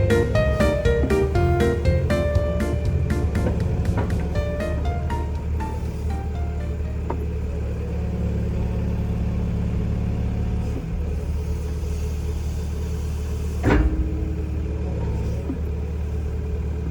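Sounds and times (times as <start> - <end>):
diesel engine running: 0.0 - 16.9
clunk: 13.6 - 15.8.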